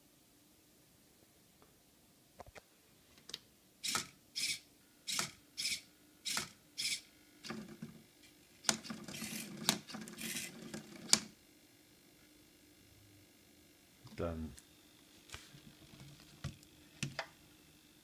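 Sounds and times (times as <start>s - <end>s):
servo motors whirring: 3.8s - 7.1s, 8.6s - 11.2s.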